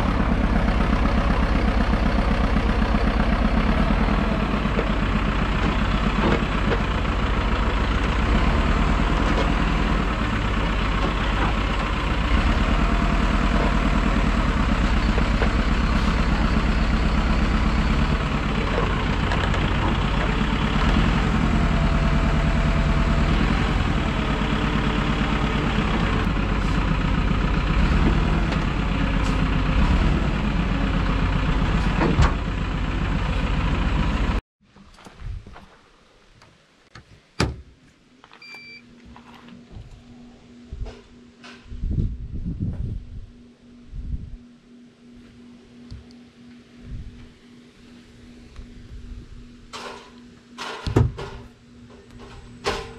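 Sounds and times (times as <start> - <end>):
machinery humming: 0.0 - 34.4.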